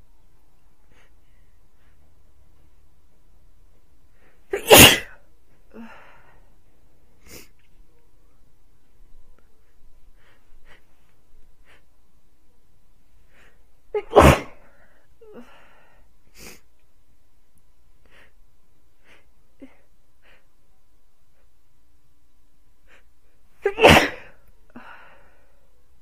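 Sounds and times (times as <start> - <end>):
faint breaths or sniffs: 0.8 - 2.1, 4.1 - 7.9, 9.4 - 12.0, 14.4 - 16.8
catching breaths: 0.8 - 2.8, 5.1 - 7.9, 9.3 - 12.0, 13.1 - 13.8, 14.5 - 16.8, 18.0 - 20.6, 24.2 - 25.8
person sneezing loudly: 4.5 - 5.2, 14.0 - 14.6, 23.6 - 24.4.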